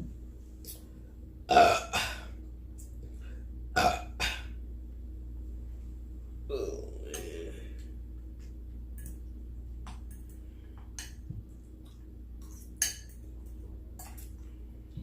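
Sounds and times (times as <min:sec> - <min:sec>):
steady low hum: 0:00.0 - 0:15.0
cutlery clicks and clinks: 0:09.0 - 0:09.2, 0:12.4 - 0:14.4.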